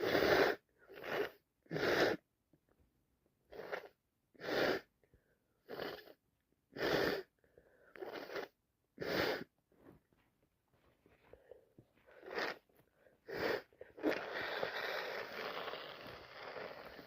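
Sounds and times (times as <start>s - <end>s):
faint breaths: 10.8s - 17.0s.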